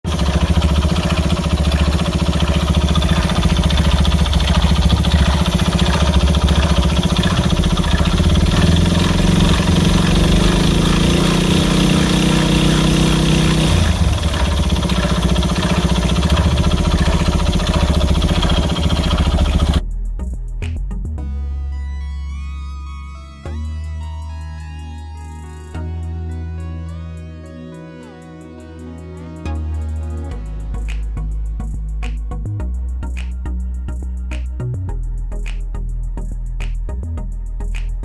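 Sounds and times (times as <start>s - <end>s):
motorcycle engine idling and revving: 0.0s - 19.9s.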